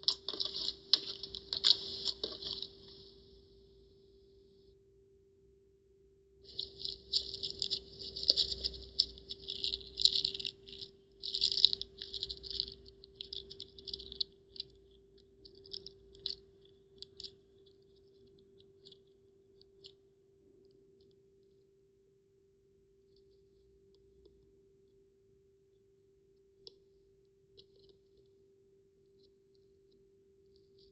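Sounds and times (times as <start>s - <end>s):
slime crackling and popping: 0.0s - 3.1s, 6.5s - 14.8s
faint hum: 0.0s - 30.9s.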